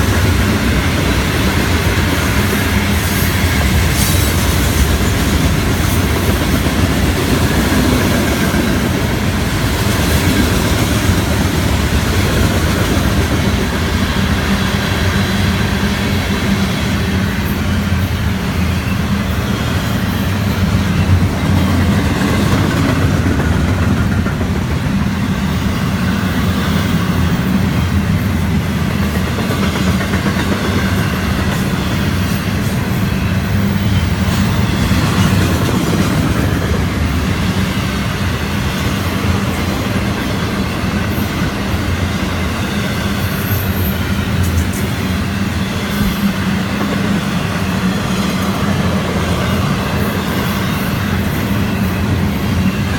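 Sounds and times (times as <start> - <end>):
train wheels rumbling on rail: 0.0 - 52.9.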